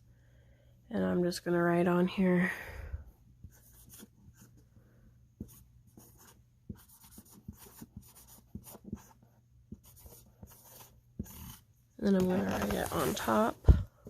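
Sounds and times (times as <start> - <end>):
marker scratching on plastic: 3.4 - 4.6, 5.4 - 13.5.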